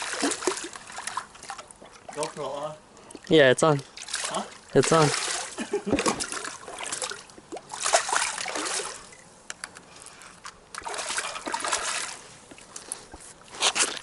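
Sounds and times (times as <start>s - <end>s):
fish splashing in water: 0.0s - 2.4s, 3.9s - 9.2s, 10.8s - 13.0s.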